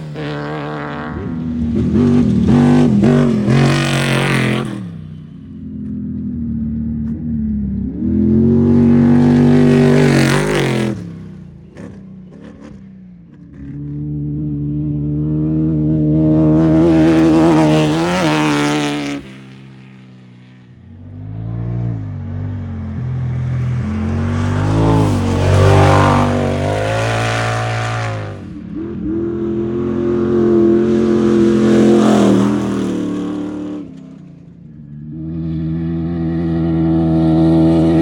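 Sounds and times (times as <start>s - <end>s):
race vehicles passing by: 0.0s - 38.0s.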